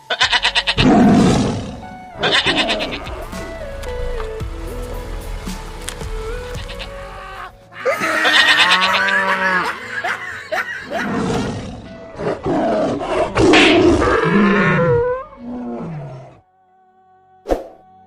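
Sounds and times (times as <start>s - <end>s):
music: 0.0s - 18.0s
animal-like growling calls: 10.8s - 16.4s.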